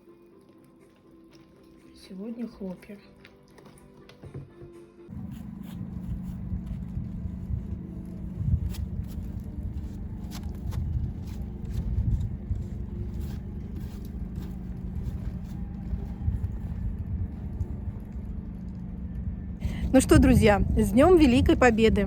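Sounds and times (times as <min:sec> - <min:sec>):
car engine running: 0:05.1 - 0:22.0.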